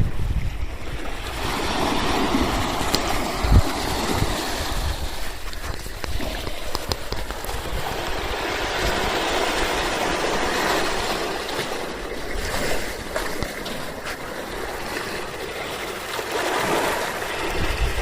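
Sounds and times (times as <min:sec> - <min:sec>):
small waves lapping at shore: 0:00.1 - 0:18.0.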